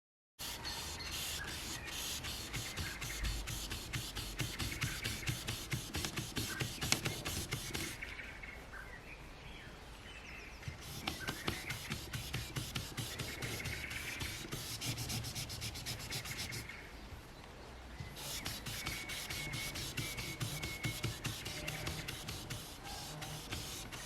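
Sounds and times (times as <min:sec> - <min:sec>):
sandpaper rasping on car paint: 0:00.4 - 0:08.0, 0:10.7 - 0:16.8, 0:18.1 - 0:24.0.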